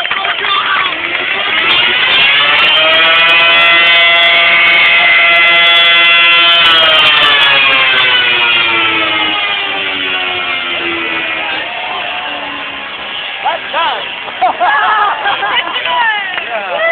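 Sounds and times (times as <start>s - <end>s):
air raid siren wailing: 0.8s - 14.3s.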